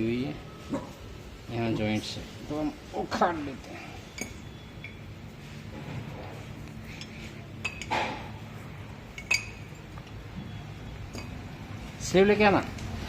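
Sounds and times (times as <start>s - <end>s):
low steady hum: 0.0s - 13.0s
metal tools clinking on metal: 3.7s - 5.1s, 6.8s - 8.3s, 9.1s - 11.5s.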